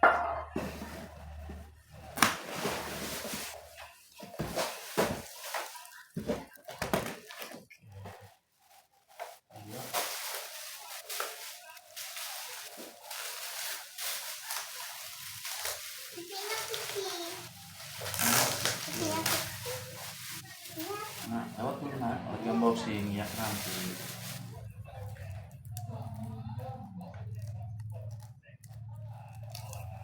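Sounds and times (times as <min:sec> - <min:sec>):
packaging rustling and scraping: 0:00.6 - 0:21.8, 0:22.4 - 0:24.7.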